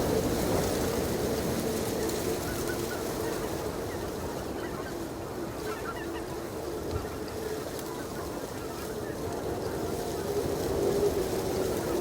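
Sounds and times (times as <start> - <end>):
geese yelping calls: 2.4 - 10.7.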